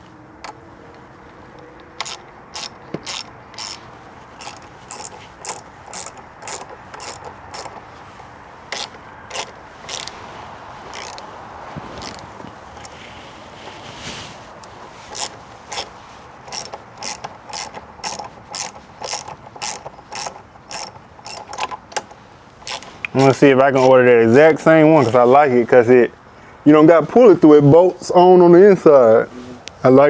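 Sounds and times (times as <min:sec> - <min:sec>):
socket ratchet clicking: 0:01.6 - 0:07.8, 0:08.7 - 0:10.1, 0:10.9 - 0:11.3, 0:12.0 - 0:12.9, 0:15.1 - 0:15.9, 0:16.5 - 0:23.9.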